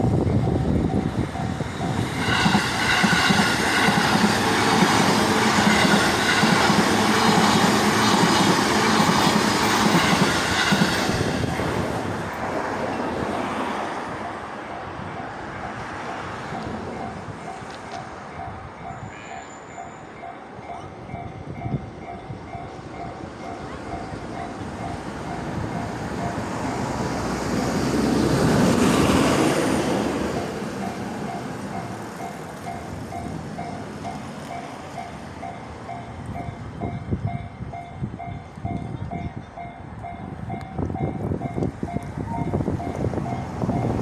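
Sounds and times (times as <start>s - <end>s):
train rumbling past: 0.0s - 44.0s
level crossing warning bell: 16.4s - 26.9s.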